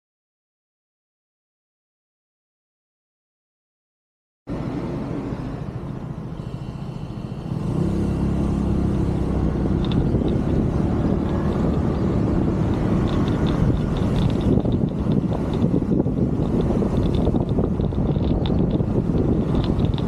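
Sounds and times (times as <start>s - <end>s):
road noise: 4.5s - 20.0s
motor scooter engine: 5.1s - 20.0s
wind on microphone: 7.5s - 20.0s.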